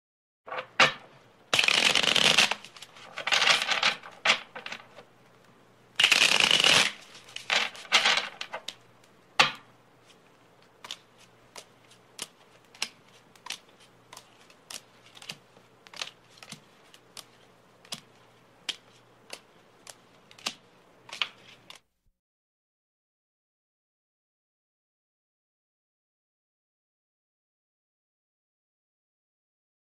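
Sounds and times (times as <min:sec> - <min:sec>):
playing cards riffle-shuffled: 0:01.5 - 0:05.1, 0:06.0 - 0:09.2, 0:10.0 - 0:21.9
card rustles and snaps: 0:10.6 - 0:21.8.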